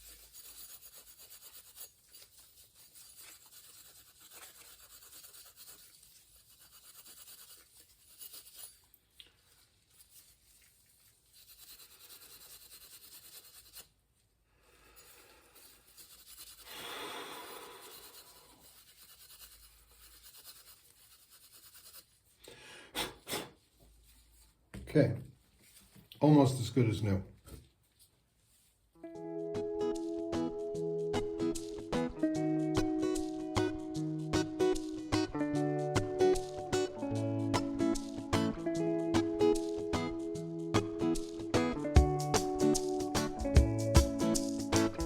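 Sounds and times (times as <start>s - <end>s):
steel wool scrubbing metal: 0.0s - 9.0s, 9.9s - 14.0s, 15.1s - 16.9s, 17.5s - 22.3s.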